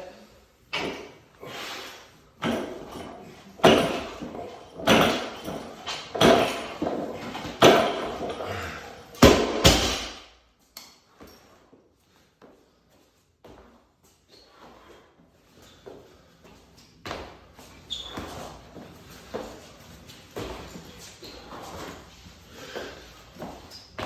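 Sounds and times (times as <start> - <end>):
barbell thudding on floor: 2.4 - 8.5, 9.2 - 10.4
loaded barbell clanking: 2.4 - 10.3.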